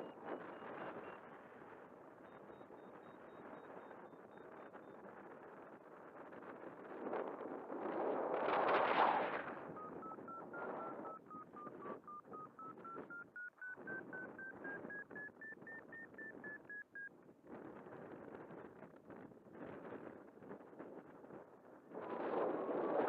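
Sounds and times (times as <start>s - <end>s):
variometer beeping: 9.5s - 17.1s.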